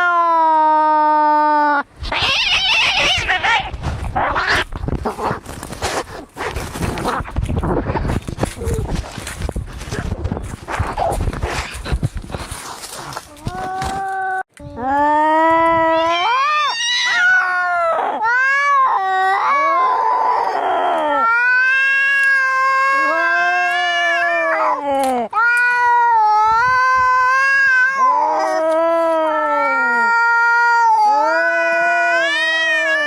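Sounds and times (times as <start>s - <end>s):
cats yowling: 2.0s - 4.7s, 15.7s - 24.8s, 25.4s - 33.0s
cat hissing: 2.0s - 7.3s.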